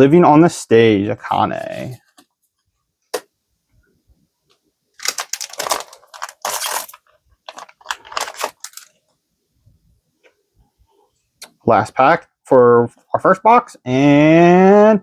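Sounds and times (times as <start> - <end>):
wrappers rustling and crinkling: 4.9 - 9.0.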